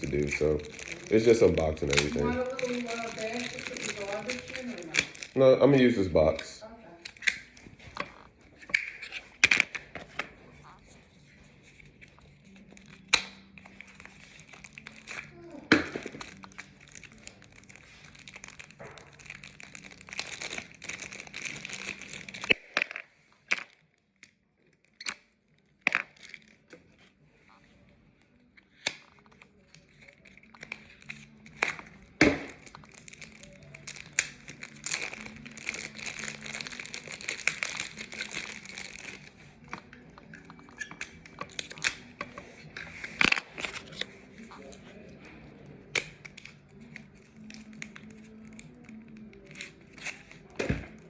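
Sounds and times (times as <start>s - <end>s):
wrappers crinkling and tearing: 0.0s - 51.0s
plastic parts snapping and clicking: 6.3s - 10.2s.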